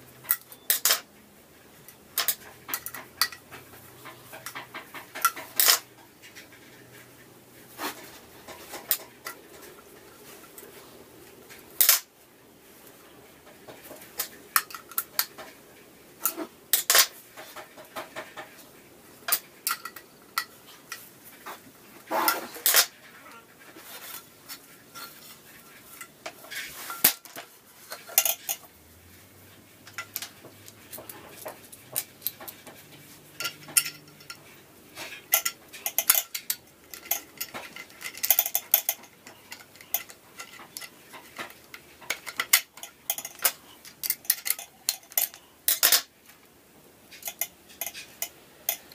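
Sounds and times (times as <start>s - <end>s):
metal parts clinking: 0.3s - 1.1s, 11.8s - 12.1s, 22.2s - 23.0s, 33.4s - 34.4s, 35.2s - 46.1s, 47.1s - 48.9s.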